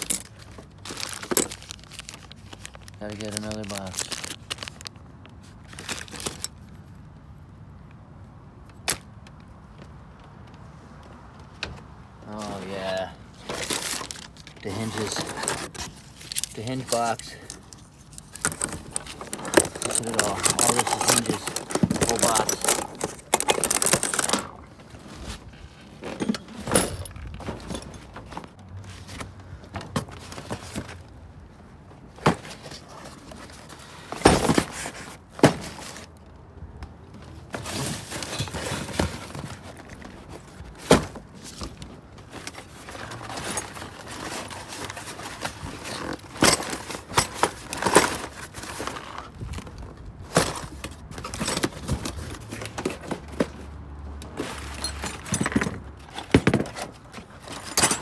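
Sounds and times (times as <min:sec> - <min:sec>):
metal door hardware clinking: 0:14.7 - 0:24.6, 0:54.7 - 0:58.0.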